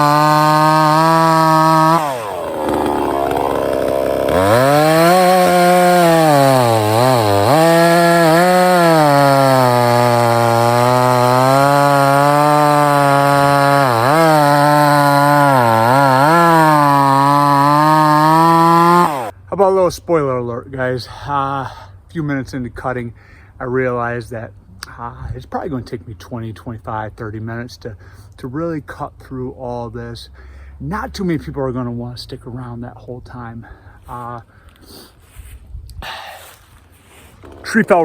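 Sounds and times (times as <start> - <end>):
chainsaw cutting wood: 0.0 - 19.3, 37.2 - 38.0.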